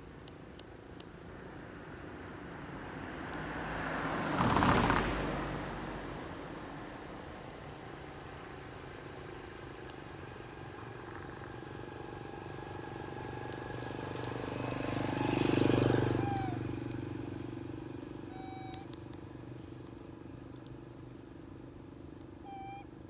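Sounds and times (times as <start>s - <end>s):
vehicle engine passing by: 2.4s - 21.3s
short high chirp: 18.3s - 18.9s, 22.5s - 22.8s.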